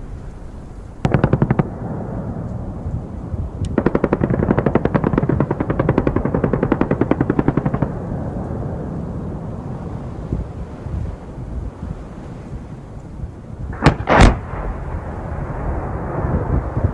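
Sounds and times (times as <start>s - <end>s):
steady low rumble: 0.0s - 16.9s
machine-gun fire: 1.0s - 1.8s, 3.8s - 8.0s, 13.8s - 14.5s.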